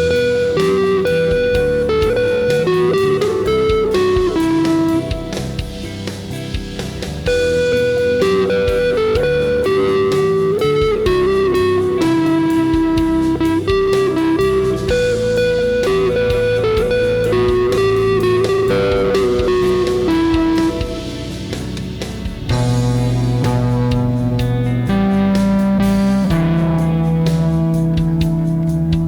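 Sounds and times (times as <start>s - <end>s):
ambient rock backing track: 0.0s - 29.0s
electric guitar lead: 0.0s - 29.0s.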